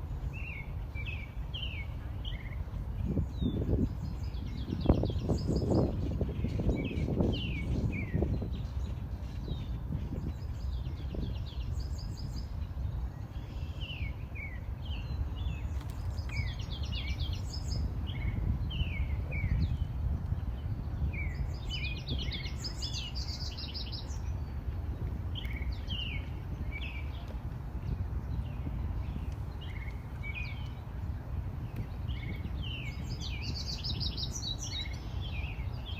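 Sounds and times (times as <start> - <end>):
songbirds chirping: 0.0 - 35.9.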